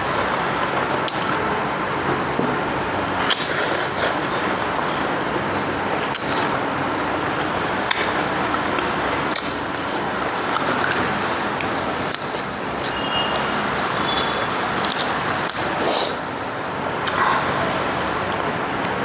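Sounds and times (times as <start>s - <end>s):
eating clicks: 3.2s - 15.7s.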